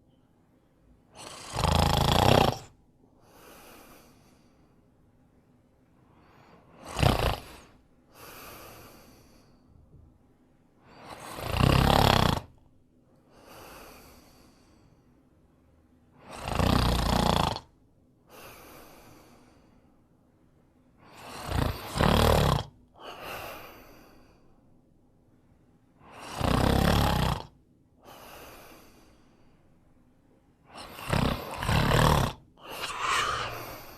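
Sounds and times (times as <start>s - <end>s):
person snoring: 1.2s - 4.5s, 6.7s - 9.5s, 11.0s - 12.6s, 16.2s - 17.7s, 21.1s - 24.0s, 26.1s - 29.1s, 30.7s - 33.9s
quiet breath: 3.1s - 11.4s, 13.1s - 16.4s, 18.2s - 22.0s, 22.9s - 26.4s, 28.0s - 33.9s.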